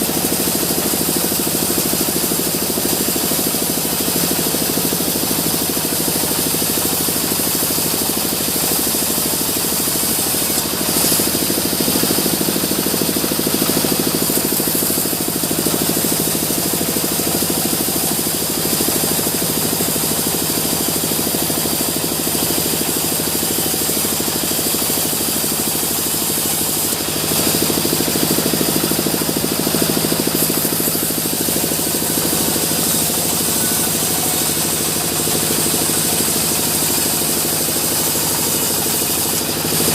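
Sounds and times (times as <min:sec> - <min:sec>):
sawmill machinery drone: 0:00.0 - 0:39.9.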